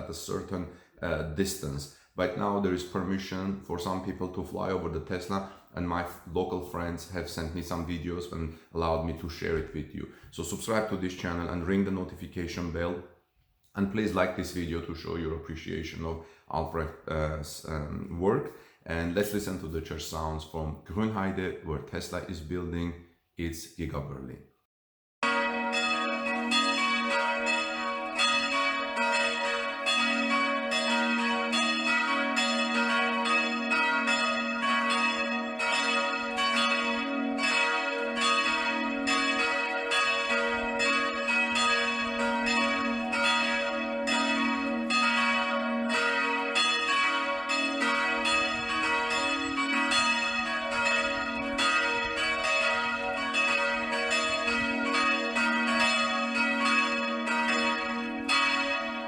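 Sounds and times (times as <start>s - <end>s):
church bells pealing: 0.0s - 13.0s, 25.2s - 59.0s.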